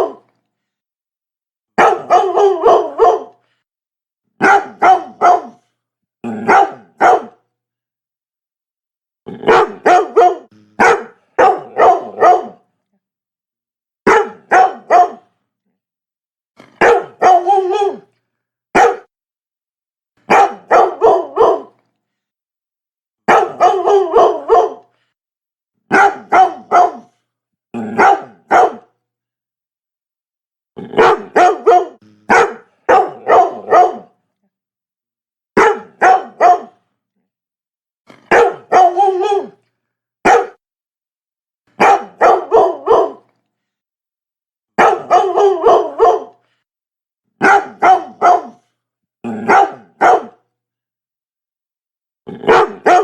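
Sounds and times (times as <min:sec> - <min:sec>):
dog barking: 0:00.0 - 0:00.3, 0:01.8 - 0:03.4, 0:04.4 - 0:05.7, 0:06.3 - 0:07.4, 0:09.4 - 0:12.6, 0:14.0 - 0:15.3, 0:16.7 - 0:18.1, 0:18.7 - 0:19.1, 0:20.3 - 0:21.8, 0:23.3 - 0:24.9, 0:25.9 - 0:27.2, 0:27.9 - 0:28.9, 0:30.9 - 0:34.2, 0:35.6 - 0:36.8, 0:38.1 - 0:39.6, 0:40.2 - 0:40.6, 0:41.8 - 0:43.3, 0:44.8 - 0:46.4, 0:47.4 - 0:48.7, 0:49.3 - 0:50.4, 0:52.3 - 0:53.0.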